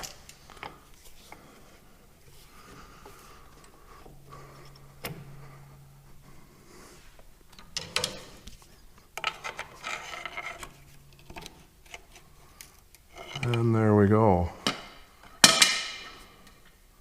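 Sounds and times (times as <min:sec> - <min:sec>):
low steady hum: 0:00.0 - 0:17.0
metal parts clattering: 0:07.6 - 0:08.4
scraping on metal: 0:09.2 - 0:13.7
knocks on metal parts: 0:14.7 - 0:16.1.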